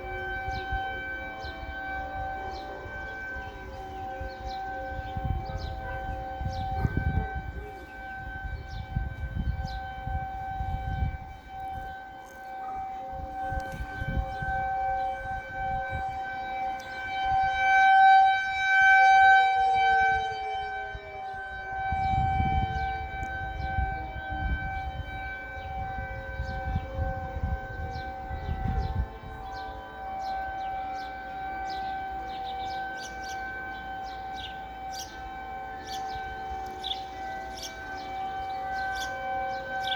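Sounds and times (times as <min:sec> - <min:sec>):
warning sirens wailing: 0:00.0 - 0:39.9.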